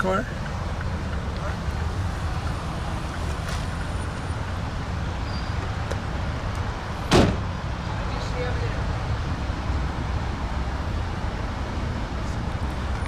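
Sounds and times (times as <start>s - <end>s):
loud thump: 7.1s - 7.5s.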